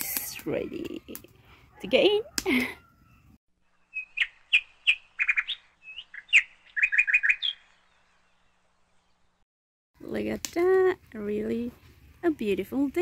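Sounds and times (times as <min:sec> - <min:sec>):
small bird chirping: 0:03.0 - 0:09.4.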